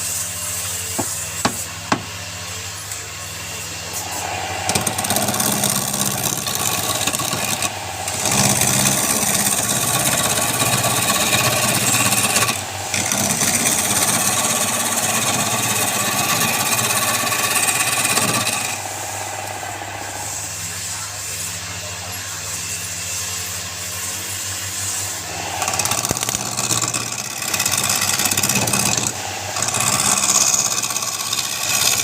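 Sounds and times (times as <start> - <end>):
tool rasping on spinning wood: 0.0 - 32.0
wood lathe motor hum: 0.1 - 32.0.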